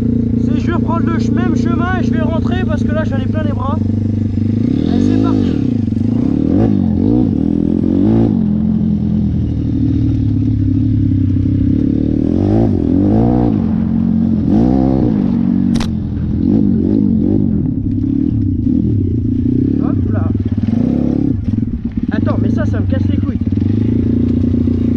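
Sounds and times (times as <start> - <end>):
dirt bike engine revving: 0.0 - 24.9
sharp click: 15.7 - 16.0.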